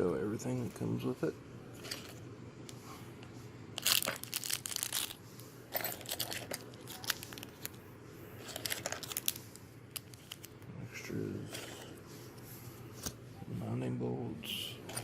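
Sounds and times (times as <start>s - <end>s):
packaging crinkling and rustling: 3.8s - 5.2s, 6.0s - 7.8s, 8.4s - 10.6s.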